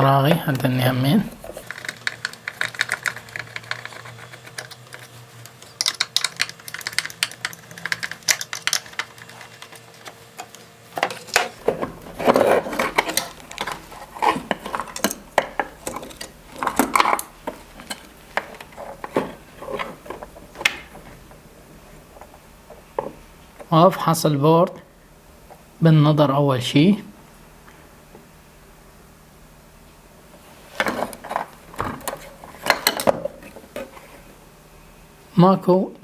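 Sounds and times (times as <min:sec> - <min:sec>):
knocking and rattling: 0:01.3 - 0:21.4.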